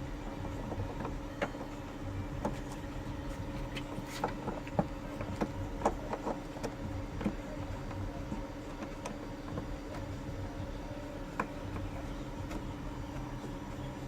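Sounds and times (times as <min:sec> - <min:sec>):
vehicle engine idling: 0:00.0 - 0:14.0.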